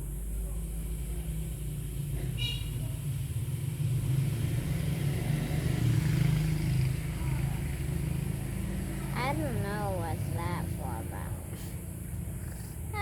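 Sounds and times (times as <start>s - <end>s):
low engine-like rumble: 0.0s - 4.1s, 6.9s - 13.0s.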